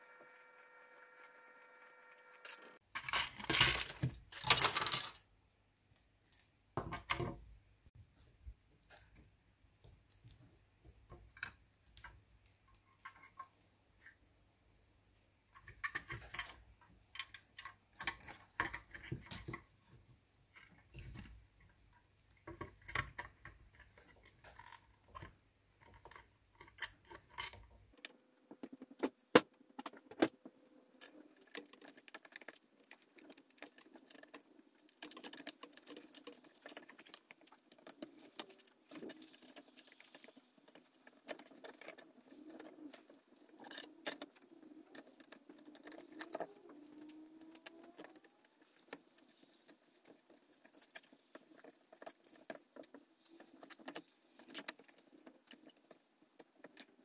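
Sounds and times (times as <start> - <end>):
clicks and taps of small parts: 15.5 - 19.6, 20.6 - 57.0.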